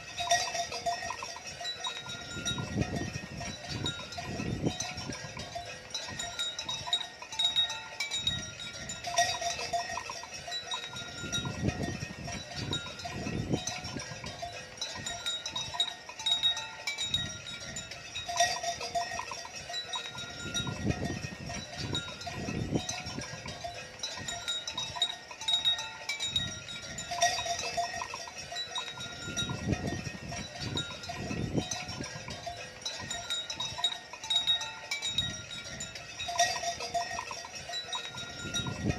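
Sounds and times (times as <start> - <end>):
cowbells clinking: 0.0 - 38.9
gusty wind noise: 2.1 - 6.4, 11.0 - 14.4, 20.2 - 24.5, 26.2 - 33.8, 35.0 - 38.9.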